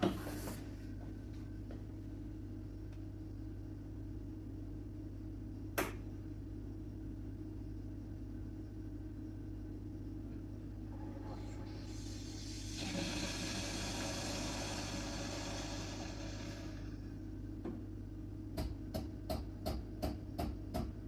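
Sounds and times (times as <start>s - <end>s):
coffee machine humming: 3.3s - 21.0s
coffee machine running noise: 10.7s - 17.4s.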